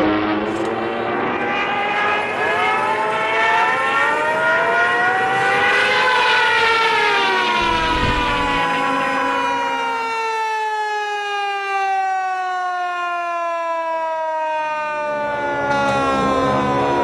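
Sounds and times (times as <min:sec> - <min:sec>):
air raid siren winding up: 0:02.3 - 0:17.0
steady drone: 0:07.6 - 0:09.0.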